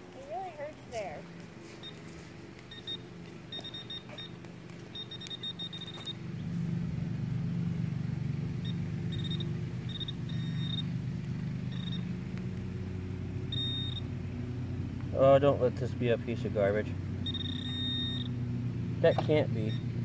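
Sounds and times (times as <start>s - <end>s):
engine hum: 0.0s - 20.0s
pinpointer high beeps: 1.8s - 2.1s, 2.7s - 6.2s, 8.6s - 10.9s, 11.7s - 12.1s, 13.5s - 14.1s, 17.2s - 18.4s, 19.0s - 19.9s.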